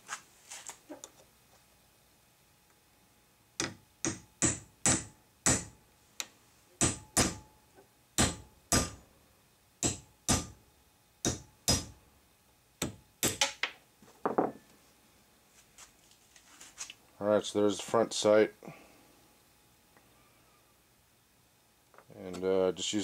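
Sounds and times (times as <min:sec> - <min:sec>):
hammer striking steel punch: 0:03.6 - 0:05.8, 0:06.8 - 0:07.5, 0:08.2 - 0:09.0, 0:09.8 - 0:10.6, 0:11.2 - 0:12.0.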